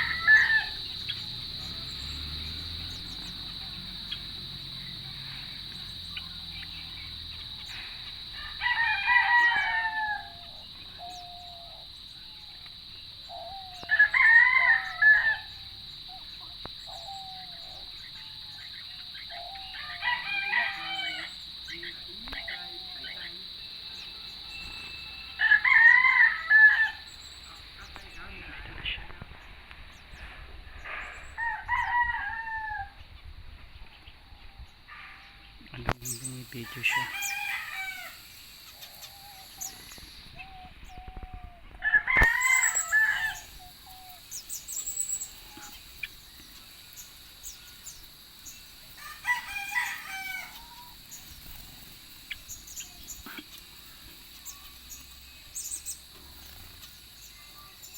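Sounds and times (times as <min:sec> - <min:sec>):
rooster crowing: 0:00.0 - 0:02.6, 0:03.5 - 0:06.5, 0:07.1 - 0:11.9, 0:13.7 - 0:15.8, 0:19.3 - 0:21.4, 0:22.4 - 0:27.2, 0:30.8 - 0:33.0, 0:36.4 - 0:39.8, 0:41.7 - 0:45.8, 0:46.8 - 0:51.2
bird calls gliding: 0:00.0 - 0:28.3, 0:36.0 - 0:41.3, 0:42.2 - 0:57.9.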